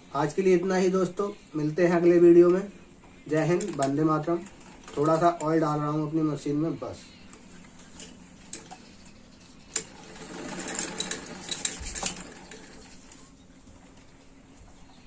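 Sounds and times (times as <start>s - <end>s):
sewing machine rattling: 3.4s - 5.5s, 9.7s - 13.2s.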